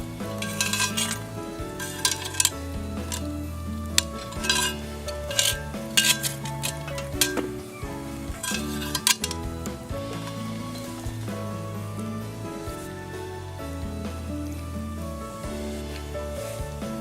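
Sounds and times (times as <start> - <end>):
metal utensil scraping in a pan: 0.0 - 13.3
background music with held notes: 0.0 - 17.0.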